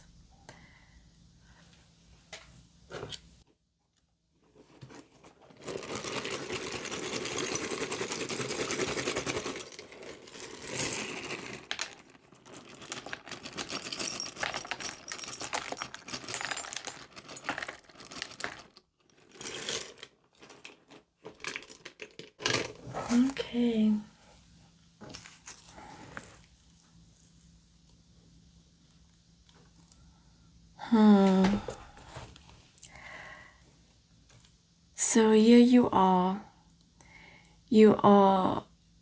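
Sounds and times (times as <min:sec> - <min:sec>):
small bones and shells rattling: 0:05.2 - 0:23.4.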